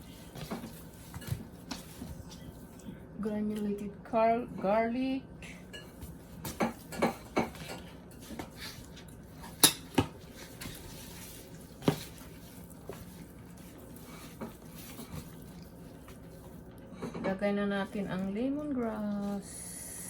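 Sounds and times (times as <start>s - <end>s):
low background hum: 0.0s - 20.0s
kitchen utensils clinking: 9.4s - 10.7s.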